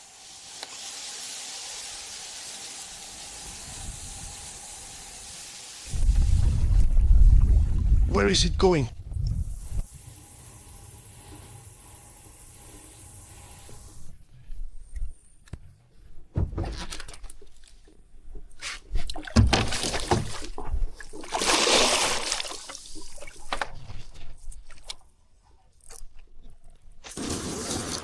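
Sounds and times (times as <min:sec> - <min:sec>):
fish splashing in water: 0:19.2 - 0:23.4.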